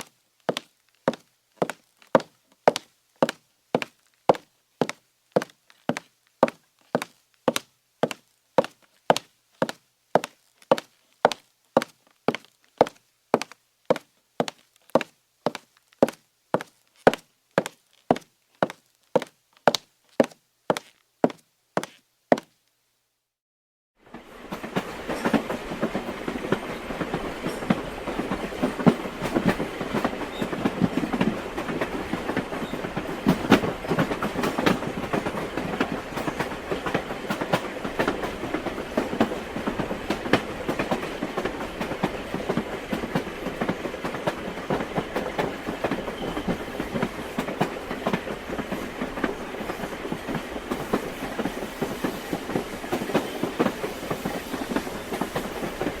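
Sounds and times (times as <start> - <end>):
train wheels clattering on rails: 24.1 - 56.0.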